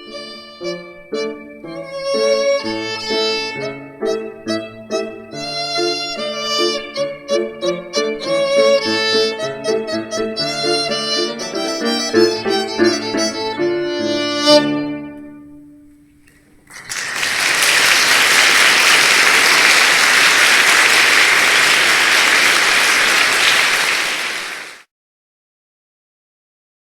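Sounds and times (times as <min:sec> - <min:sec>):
instrumental music with bowed strings: 0:00.0 - 0:15.8.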